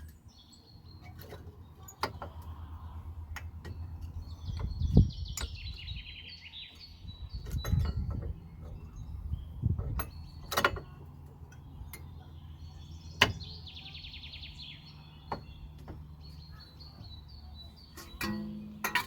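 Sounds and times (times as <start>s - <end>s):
tools and brake parts clicking: 0.0s - 2.6s, 3.2s - 6.0s, 6.8s - 12.2s, 17.0s - 19.0s.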